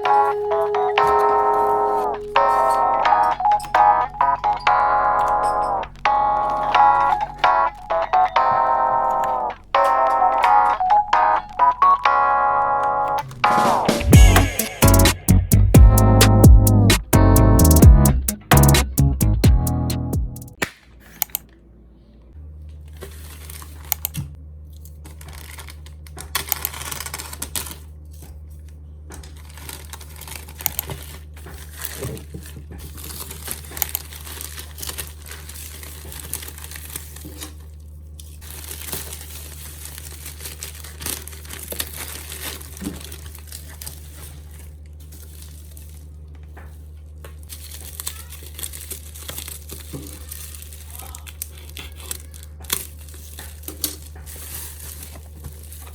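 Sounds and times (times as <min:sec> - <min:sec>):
steady low hum: 0:00.0 - 0:20.6
packaging crinkling and tearing: 0:25.0 - 0:28.0, 0:29.2 - 0:55.9.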